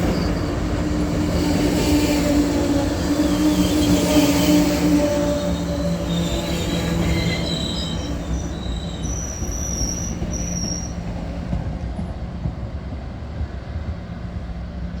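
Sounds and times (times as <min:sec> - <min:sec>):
train wheels squealing: 0:00.0 - 0:11.4
train rumbling: 0:00.0 - 0:15.0.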